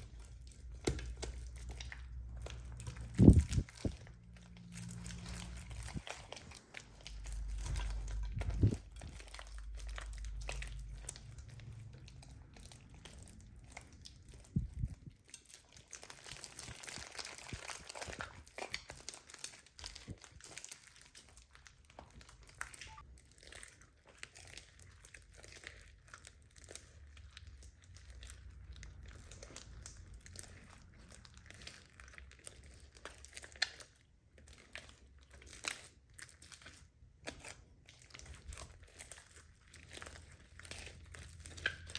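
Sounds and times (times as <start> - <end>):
crinkling and crackling materials: 0.0 - 41.9
low rumble: 1.8 - 15.1.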